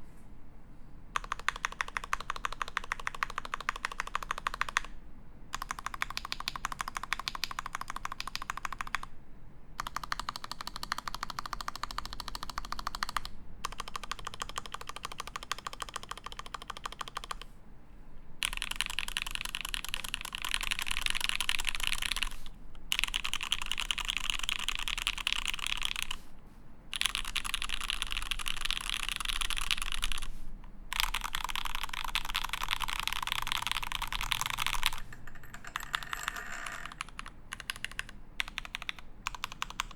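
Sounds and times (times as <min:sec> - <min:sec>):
mechanical keyboard typing: 0:01.2 - 0:09.1, 0:09.8 - 0:17.5, 0:18.4 - 0:26.2, 0:26.9 - 0:39.9.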